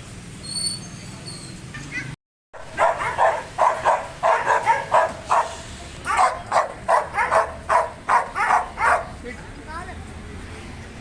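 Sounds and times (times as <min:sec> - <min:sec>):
dog barking aggressively: 0:02.6 - 0:09.2.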